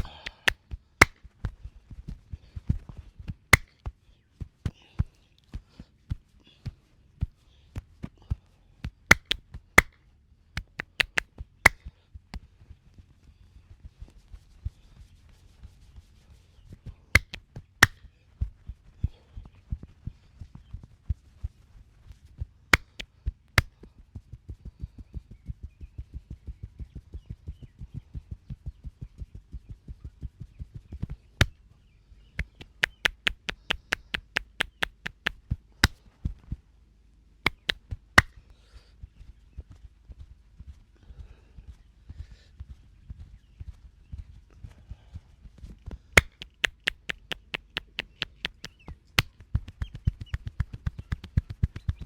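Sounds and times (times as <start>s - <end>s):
loud sharp clicks: 0.0s - 1.2s, 9.1s - 9.9s, 10.6s - 11.2s, 17.2s - 18.0s, 22.8s - 23.0s, 32.4s - 36.0s, 37.5s - 38.3s, 46.2s - 49.3s
sharp hand slaps: 0.0s - 1.2s, 9.1s - 10.0s, 10.6s - 11.8s, 17.2s - 18.0s, 22.8s - 23.1s, 32.4s - 36.0s, 37.5s - 38.3s, 46.2s - 52.0s
massage pats and rubs: 0.0s - 4.0s, 8.9s - 9.9s, 10.6s - 11.9s, 17.2s - 18.9s, 21.0s - 23.8s, 32.4s - 36.0s, 37.5s - 38.4s, 46.2s - 52.0s
soft tapping: 9.1s - 9.4s, 10.6s - 11.2s, 17.2s - 18.0s, 22.8s - 23.0s, 32.4s - 36.0s, 37.5s - 37.8s, 46.2s - 52.0s
soft massage thumps: 17.2s - 23.0s, 46.2s - 52.0s.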